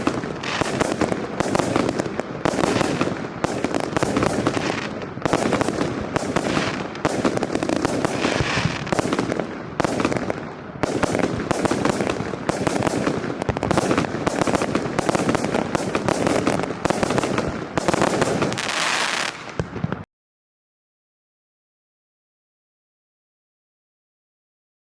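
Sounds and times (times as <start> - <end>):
fireworks barrage with crackling: 0.0 - 20.1.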